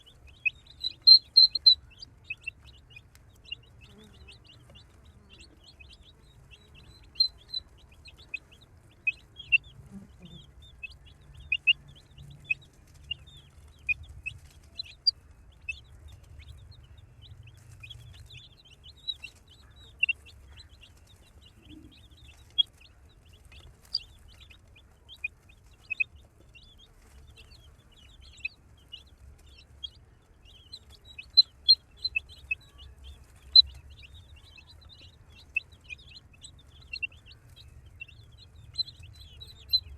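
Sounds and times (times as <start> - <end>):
baby chicks peeping: 0.0 - 39.9
faint low hum: 0.0 - 39.9.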